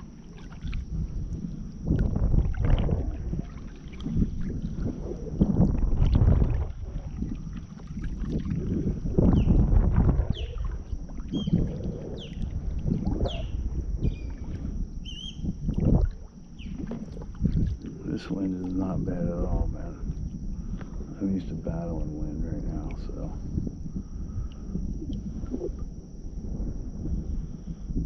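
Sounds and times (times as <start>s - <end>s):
paddle strokes swishing through water: 0.0s - 9.3s, 15.8s - 17.9s
wind rumble on microphone: 0.0s - 28.0s.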